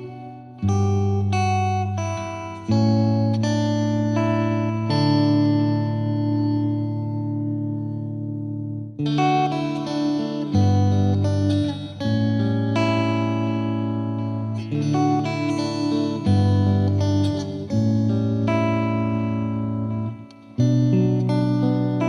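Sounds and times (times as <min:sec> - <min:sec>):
guitar-led instrumental music: 0:00.0 - 0:22.0.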